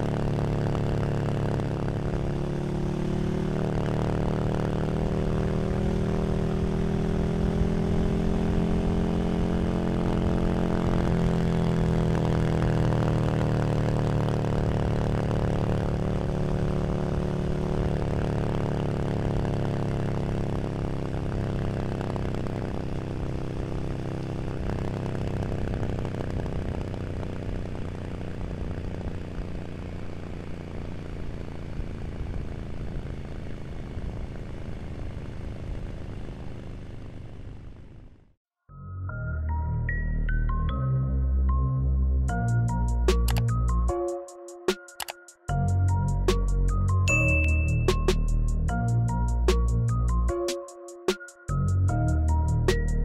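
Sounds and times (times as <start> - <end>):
motorcycle engine running: 0.0 - 38.2.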